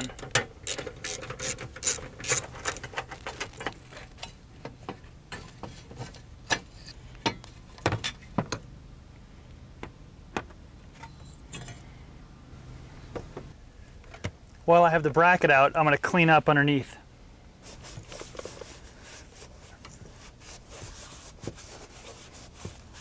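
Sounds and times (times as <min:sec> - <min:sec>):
ratchet wrench clicking: 0:00.6 - 0:02.8.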